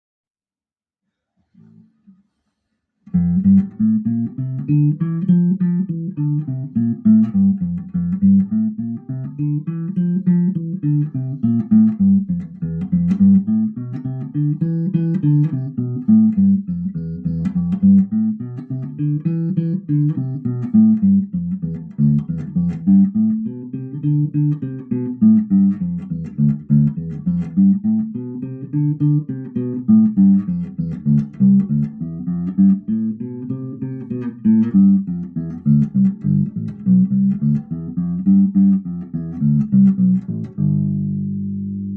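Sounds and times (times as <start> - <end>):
electric bass line: 3.1 - 41.9.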